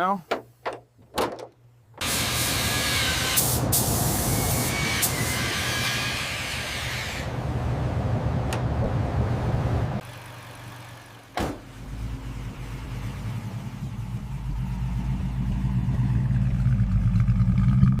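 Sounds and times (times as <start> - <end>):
hiss: 2.0 - 7.3
car engine rumbling: 7.2 - 18.0.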